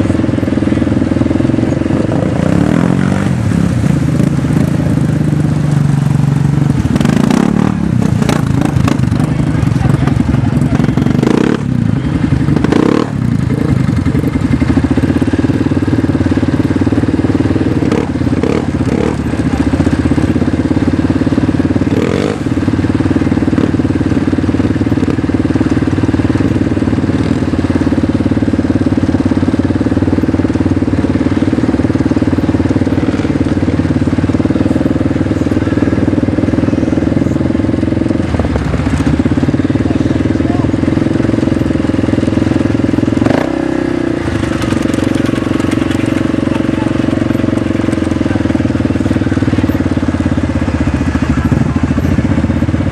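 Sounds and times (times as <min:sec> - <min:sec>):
vehicle engine running: 0:00.0 - 0:52.9.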